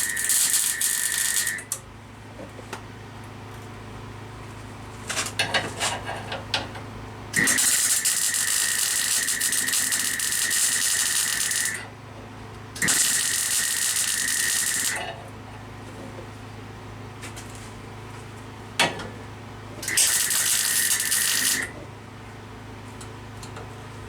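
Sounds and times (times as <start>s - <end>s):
welding crackling sizzle: 0.0s - 1.8s, 7.4s - 11.8s, 12.8s - 15.0s, 19.8s - 21.7s.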